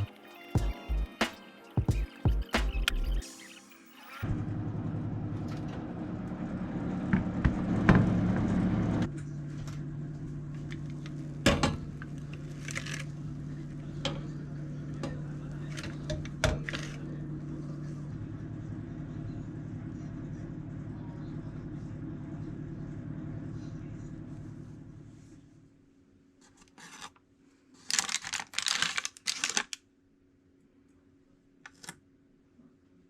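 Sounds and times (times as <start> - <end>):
steady machine hum: 4.2 - 26.1.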